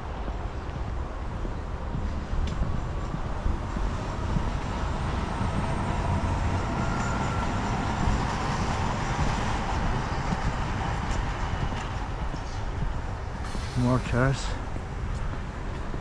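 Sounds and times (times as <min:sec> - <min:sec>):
vehicle rumble with hiss: 0:07.3 - 0:16.0.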